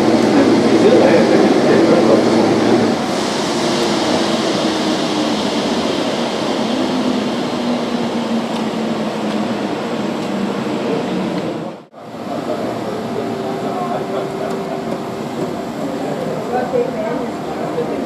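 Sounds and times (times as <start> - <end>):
jet engine rushing: 0.0 - 17.9.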